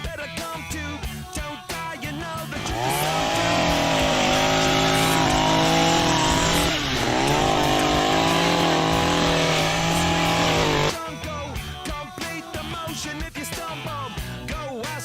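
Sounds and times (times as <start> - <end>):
engine revving high: 2.6 - 10.9.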